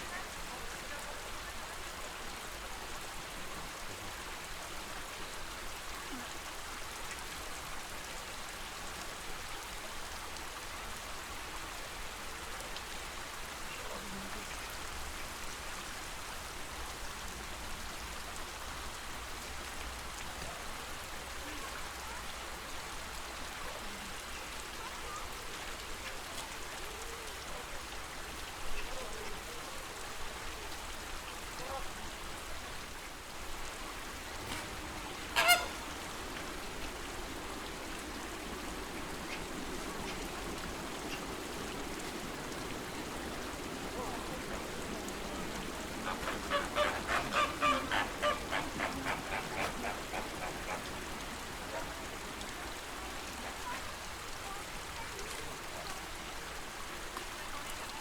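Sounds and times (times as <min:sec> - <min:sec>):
lake water washing: 0:00.0 - 0:58.0
flamingos honking: 0:34.0 - 0:53.9.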